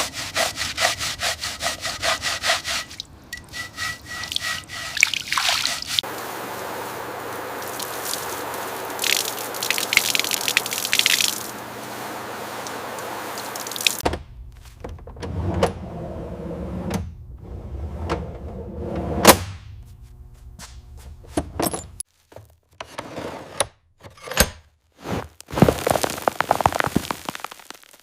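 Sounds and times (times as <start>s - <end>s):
low machine hum: 6.1s - 22.0s.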